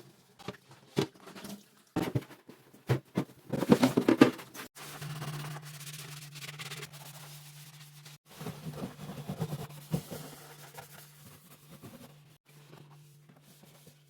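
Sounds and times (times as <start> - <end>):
containers knocking and rattling: 0.4 - 4.7.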